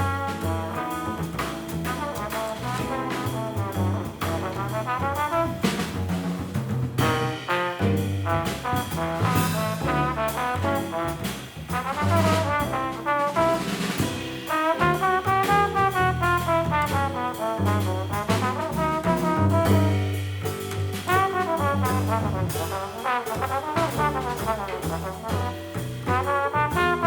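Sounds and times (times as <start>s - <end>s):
trombone melody: 0.0s - 6.2s, 7.0s - 27.0s
small jazz group playing: 0.0s - 27.0s.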